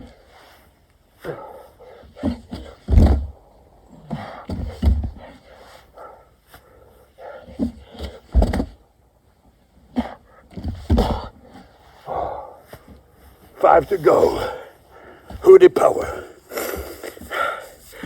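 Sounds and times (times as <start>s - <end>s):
person panting heavily: 16.0s - 18.0s.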